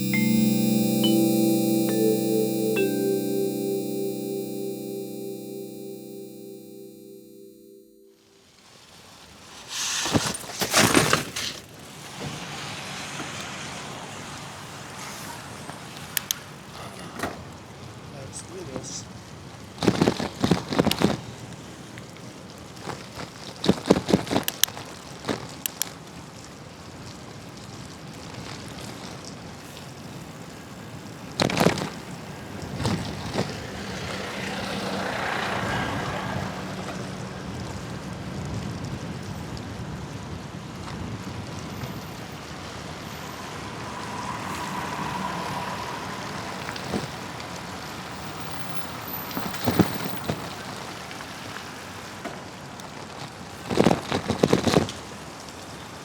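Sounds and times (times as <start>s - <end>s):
street traffic passing: 32.0s - 50.7s.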